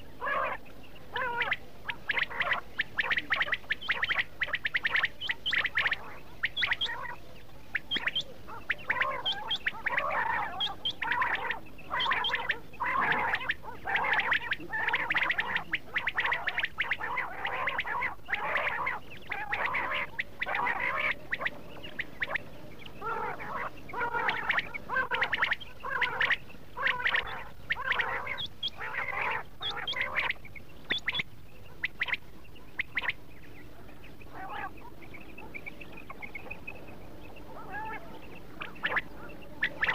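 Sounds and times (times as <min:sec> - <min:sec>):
quail calling: 0:00.0 - 0:39.9.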